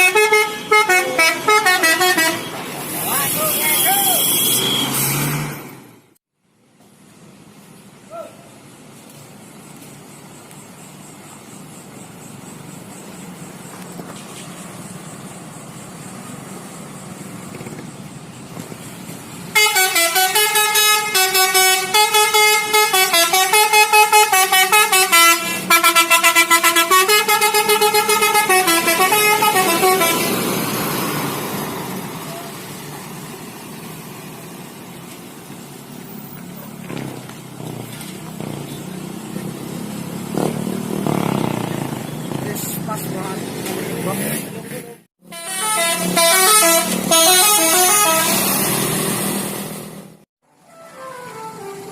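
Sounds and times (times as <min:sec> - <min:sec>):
multi-tone musical air horn: 0:00.0 - 0:02.6, 0:19.5 - 0:30.5, 0:45.2 - 0:48.8, 0:50.5 - 0:51.9
bus engine and road noise: 0:00.0 - 0:51.9.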